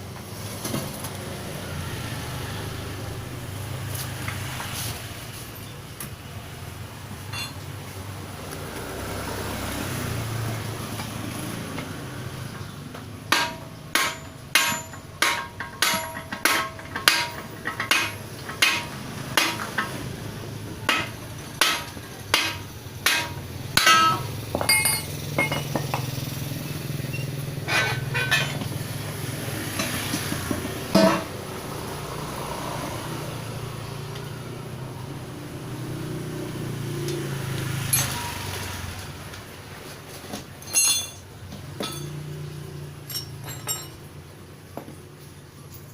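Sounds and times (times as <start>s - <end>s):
hammer striking metal: 13.3s - 20.0s, 20.9s - 26.0s, 27.6s - 28.8s, 29.8s - 31.3s, 40.7s - 41.2s, 41.8s - 42.2s
light metal clinks: 23.8s - 26.1s, 40.6s - 42.3s, 43.0s - 44.1s.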